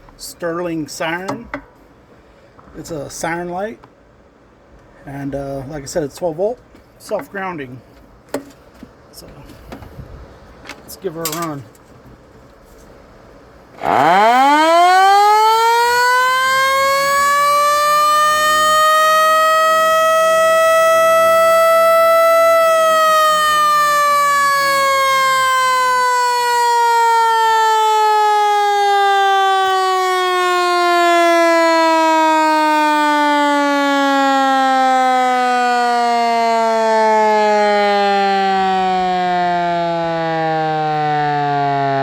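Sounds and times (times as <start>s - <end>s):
mechanical siren winding down: 13.8s - 42.0s.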